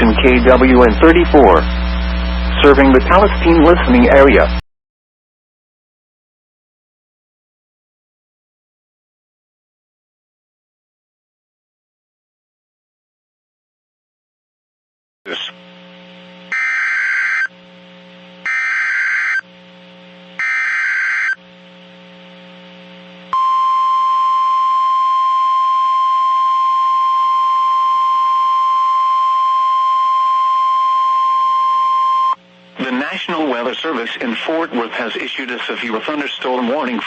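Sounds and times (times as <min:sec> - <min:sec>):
harsh screeching data bursts: 0:16.5 - 0:17.5, 0:18.5 - 0:19.4, 0:20.4 - 0:21.4
steady warning alarm tone: 0:16.5 - 0:17.5, 0:18.4 - 0:19.4, 0:20.4 - 0:21.4, 0:23.3 - 0:32.4.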